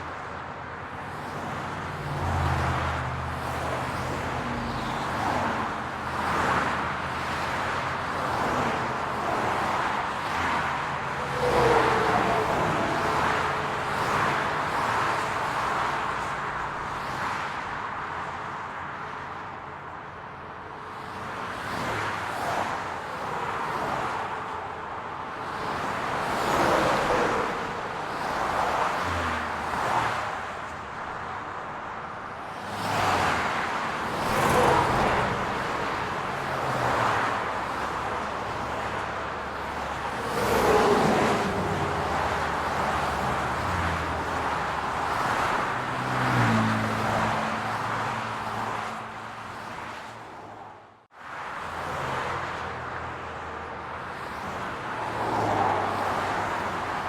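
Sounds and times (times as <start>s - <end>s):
cars passing: 0.0s - 57.0s.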